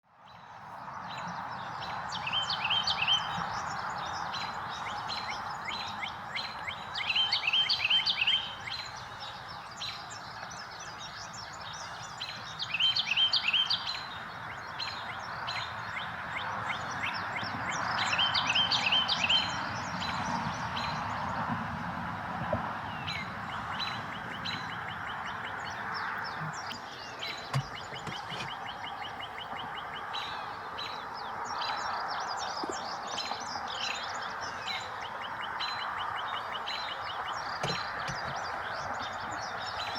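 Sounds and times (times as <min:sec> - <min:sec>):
small bird singing trills: 0:01.1 - 0:20.2.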